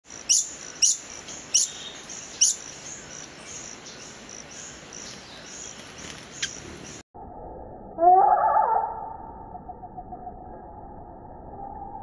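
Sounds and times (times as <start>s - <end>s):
hummingbird high chirps: 0.2s - 7.0s.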